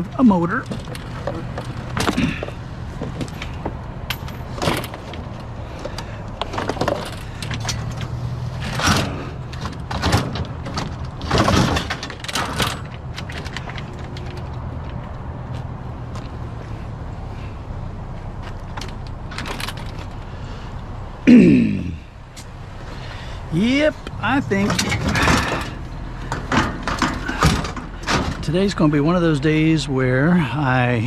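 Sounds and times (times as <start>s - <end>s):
low engine hum: 0.0s - 31.0s
metal objects knocking and clattering: 8.6s - 14.6s, 24.6s - 28.5s.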